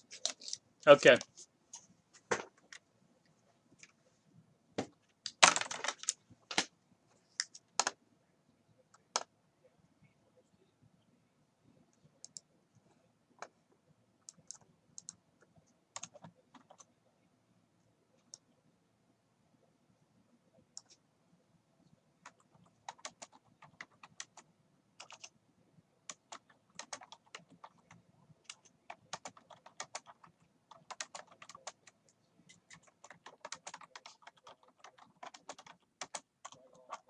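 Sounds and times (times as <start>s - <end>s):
computer keyboard typing: 14.2s - 15.2s, 16.0s - 16.9s, 22.2s - 25.4s, 26.0s - 37.0s.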